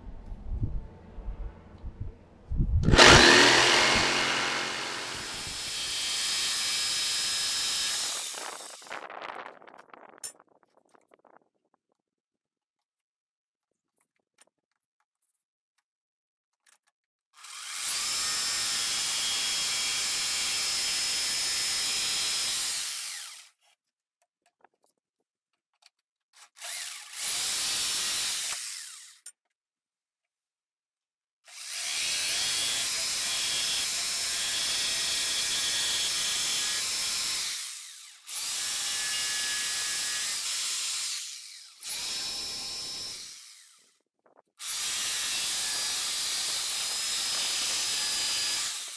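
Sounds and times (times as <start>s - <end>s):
power tool cutting fibreglass: 2.8s - 8.9s, 17.4s - 23.6s, 26.4s - 29.3s, 31.5s - 43.9s, 44.6s - 48.9s.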